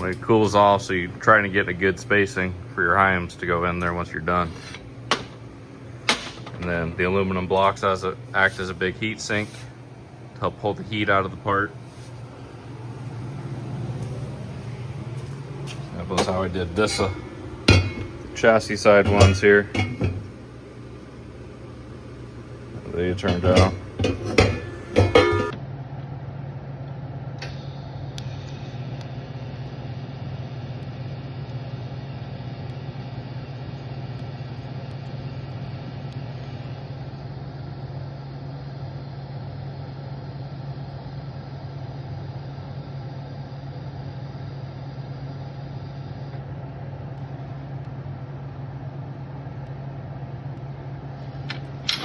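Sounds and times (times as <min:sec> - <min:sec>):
welding arc hiss: 0:00.0 - 0:25.5
welding machine hum: 0:00.0 - 0:25.6, 0:27.1 - 0:52.0.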